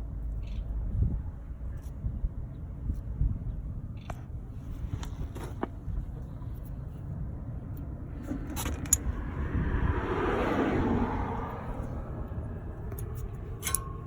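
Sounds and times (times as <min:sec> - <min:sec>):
steady low rumble: 0:00.0 - 0:14.0
car passing by: 0:08.2 - 0:14.0.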